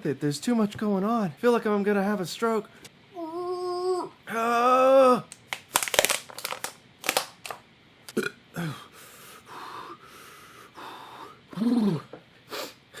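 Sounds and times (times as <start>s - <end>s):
man groaning: 3.2s - 5.3s
man choking and gasping: 11.5s - 12.2s.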